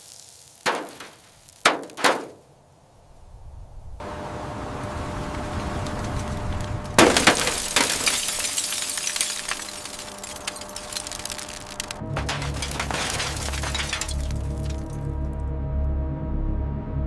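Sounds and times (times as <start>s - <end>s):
glass shattering: 0.7s - 2.4s, 7.0s - 15.1s
low steady rumble: 3.3s - 8.6s
glass fragments tinkling: 7.0s - 15.0s.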